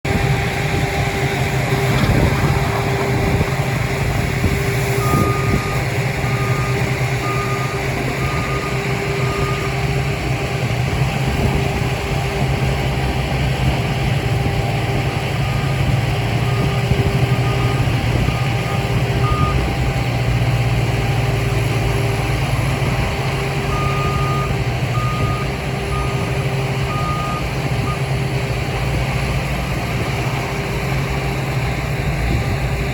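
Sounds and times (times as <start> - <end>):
diesel engine hum: 0.0 - 32.9
reversing alarm beeping: 4.9 - 9.9, 15.1 - 19.7, 23.6 - 28.1.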